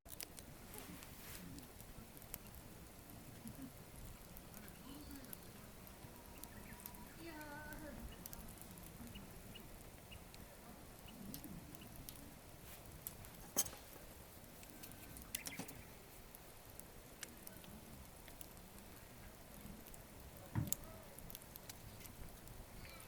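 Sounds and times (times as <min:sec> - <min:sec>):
campfire crackling: 0:00.1 - 0:23.0
sharp pops of fire: 0:00.1 - 0:23.0.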